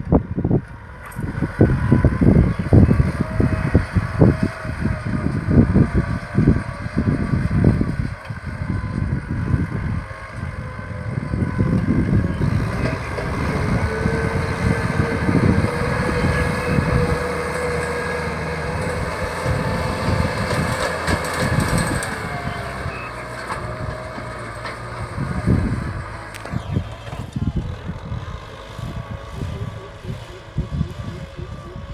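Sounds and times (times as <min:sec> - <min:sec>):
tractor diesel engine running: 0:00.0 - 0:31.9.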